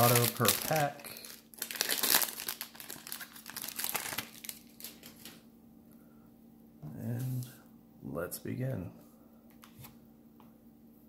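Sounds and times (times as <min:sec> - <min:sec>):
plastic wrapper crinkling and tearing: 0:00.0 - 0:05.4.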